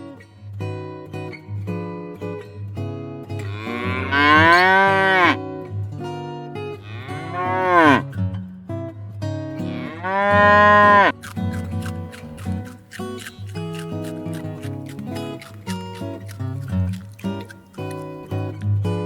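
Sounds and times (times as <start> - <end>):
acoustic guitar music: 0.0 - 3.5, 5.4 - 19.0
animal calling: 10.4 - 18.5.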